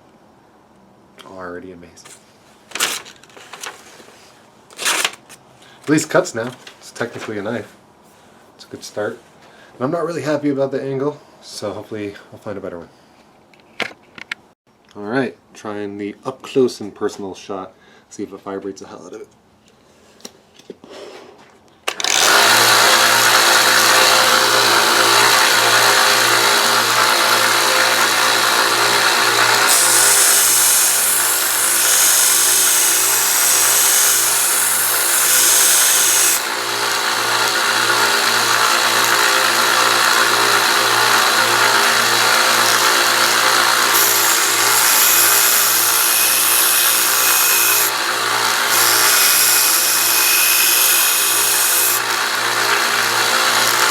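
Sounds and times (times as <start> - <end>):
belt sander humming: 21.9 - 53.9
knife blade grinding on belt: 28.8 - 36.5, 43.9 - 47.9.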